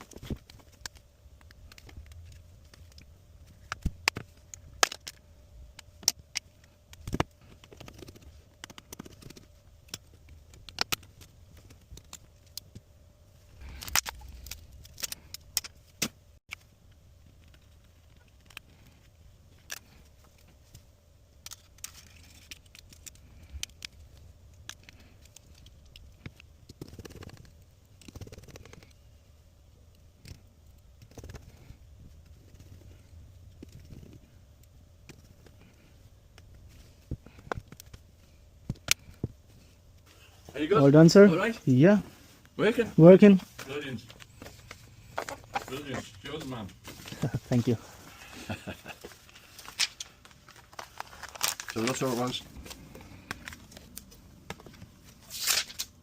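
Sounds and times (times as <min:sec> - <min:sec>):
faint steady hum: 0:00.0 - 0:56.0
rustling: 0:30.2 - 0:56.0.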